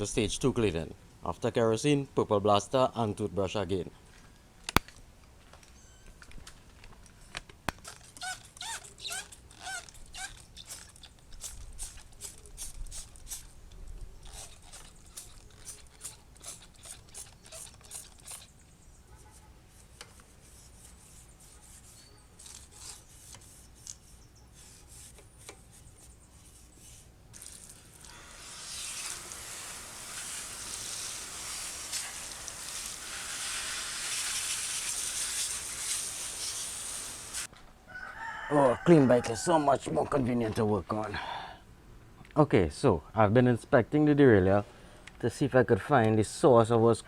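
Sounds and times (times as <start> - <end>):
toothbrush scrubbing bicycle chain: 7.8 - 13.6, 14.2 - 18.5, 19.7 - 37.5
spraying hiss: 27.7 - 37.5.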